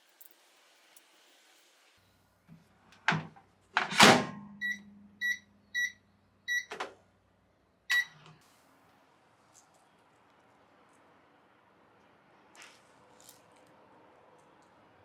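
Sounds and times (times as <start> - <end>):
microwave clunks: 3.1 - 4.8
short high beeps: 4.6 - 6.7.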